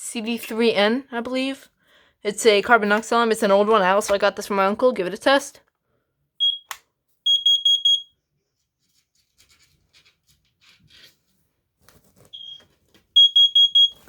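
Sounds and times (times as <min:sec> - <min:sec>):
high-pitched alarm beeps: 0:06.4 - 0:06.7, 0:07.3 - 0:08.1, 0:13.2 - 0:14.0
short beep: 0:13.2 - 0:14.0.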